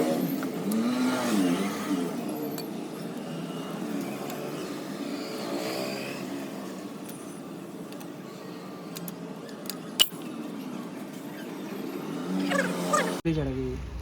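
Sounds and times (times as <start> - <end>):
road traffic engine noise: 0.0 - 14.0.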